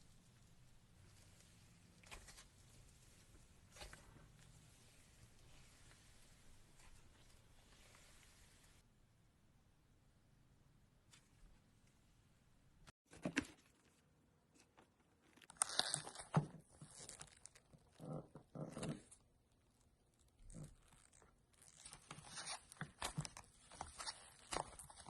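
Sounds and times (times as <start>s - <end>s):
slime crackling and tearing: 15.4s - 18.2s, 20.1s - 25.0s.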